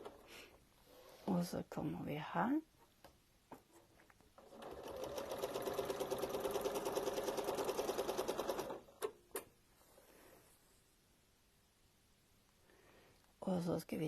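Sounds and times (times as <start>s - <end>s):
sewing machine stitching: 4.4s - 9.2s.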